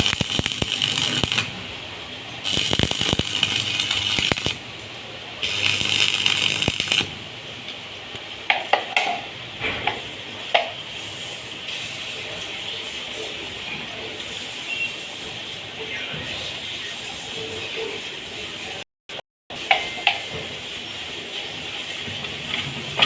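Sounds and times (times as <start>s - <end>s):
hissing bursts: 2.4s - 4.6s, 5.4s - 7.2s.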